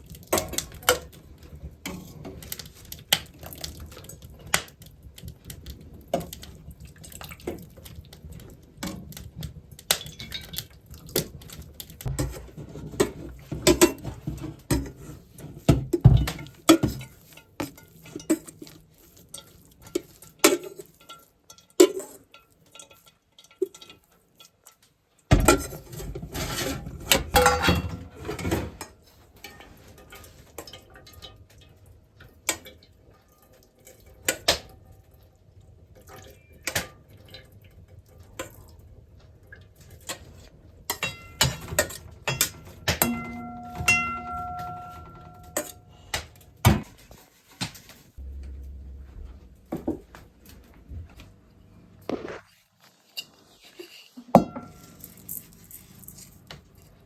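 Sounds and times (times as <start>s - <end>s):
hard objects clinking and clattering: 40.9s - 48.8s, 54.3s - 57.0s.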